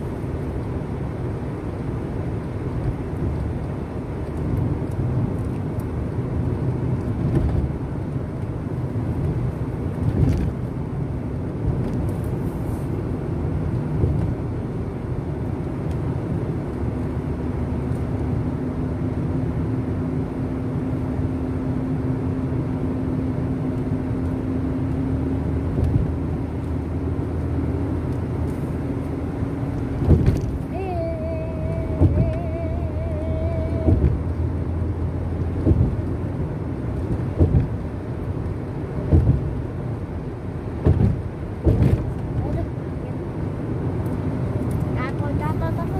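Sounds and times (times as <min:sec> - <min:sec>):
vehicle engine and road rumble: 0:00.0 - 0:45.9
steady hum: 0:28.3 - 0:34.9.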